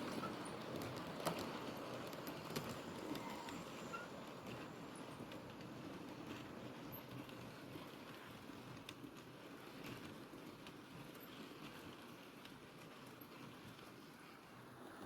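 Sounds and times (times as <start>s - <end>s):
model train rumbling on track: 0.0s - 12.2s
wheels clicking over rail joints: 0.0s - 15.0s.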